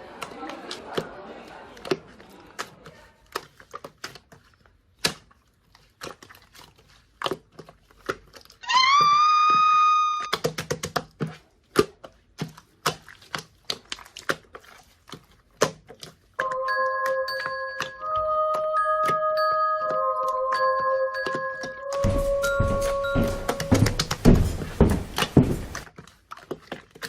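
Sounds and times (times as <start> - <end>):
rising pitched tone: 16.4 - 24.1
bell-like music: 16.4 - 24.7.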